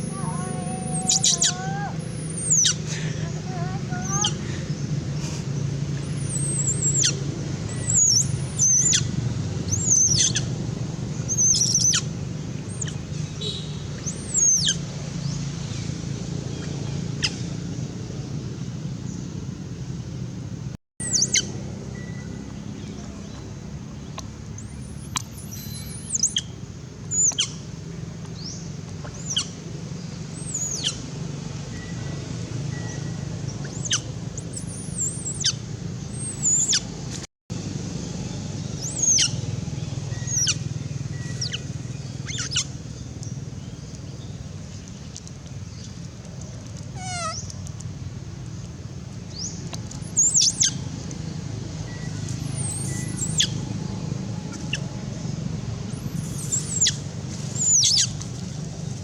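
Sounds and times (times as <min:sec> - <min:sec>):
high-pitched downward sweeping calls: 0:00.0 - 0:04.4.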